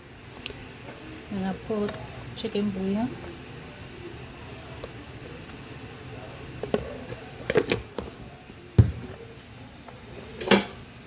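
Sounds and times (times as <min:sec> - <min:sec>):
kitchen clicks and knocks: 0:10.4 - 0:10.8.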